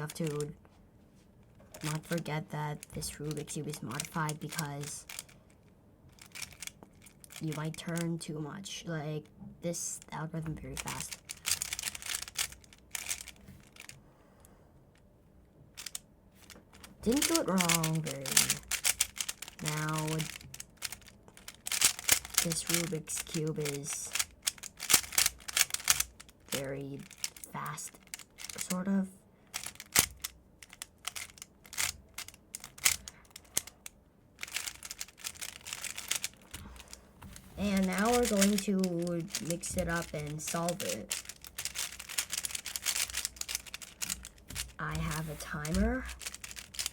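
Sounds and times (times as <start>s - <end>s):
puzzle cube plastic clacking: 0.0s - 0.6s, 1.6s - 8.3s, 10.0s - 14.0s, 15.7s - 46.9s.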